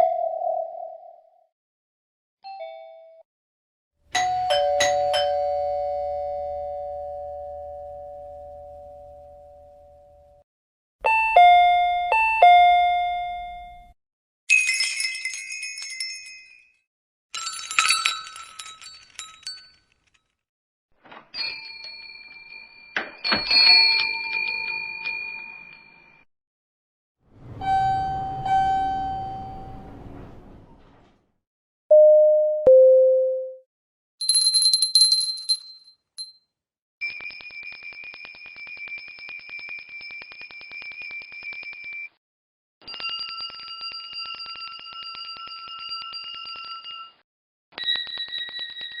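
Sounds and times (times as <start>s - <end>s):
bell ringing: 27.4s - 30.0s.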